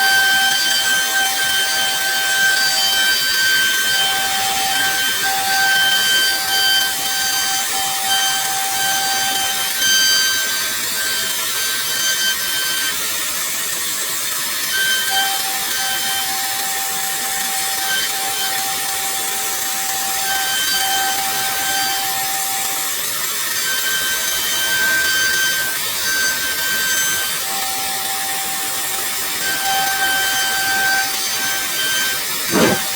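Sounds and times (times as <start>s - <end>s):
router spindle whine: 29.6s - 32.9s
hiss of bit cutting wood: 32.5s - 32.9s.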